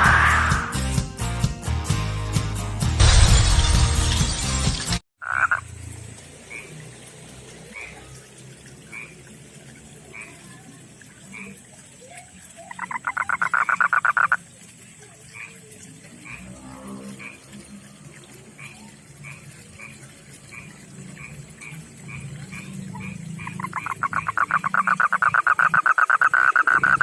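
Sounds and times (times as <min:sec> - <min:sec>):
frog pulsed trill: 0:05.2 - 0:05.6, 0:12.7 - 0:14.4, 0:22.1 - 0:27.0
faint short frog chirps: 0:12.7 - 0:14.4.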